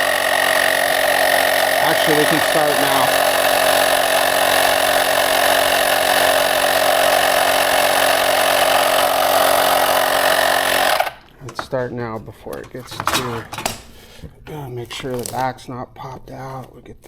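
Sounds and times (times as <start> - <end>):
electric bike pump running: 0.0 - 11.3.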